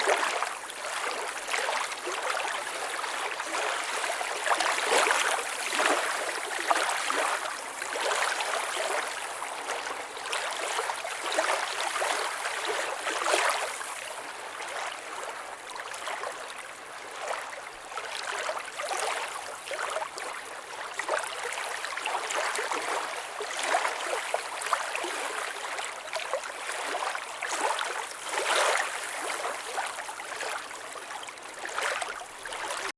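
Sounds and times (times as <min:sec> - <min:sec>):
water splashing and gurgling: 0:00.0 - 0:13.8, 0:18.2 - 0:32.9.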